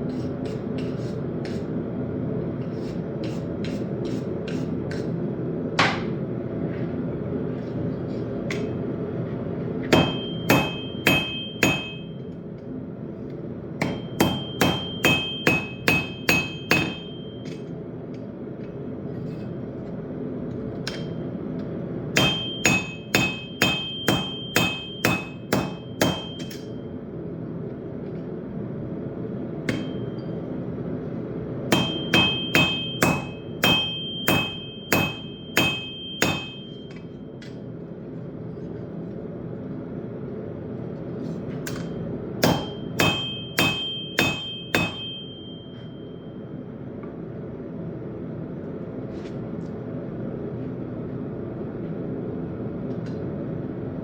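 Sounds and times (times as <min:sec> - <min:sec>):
hammer striking steel on anvil: 0:09.8 - 0:12.4, 0:13.8 - 0:17.7, 0:20.8 - 0:21.2, 0:22.1 - 0:26.8, 0:29.6 - 0:30.4, 0:31.7 - 0:37.6, 0:41.6 - 0:46.4.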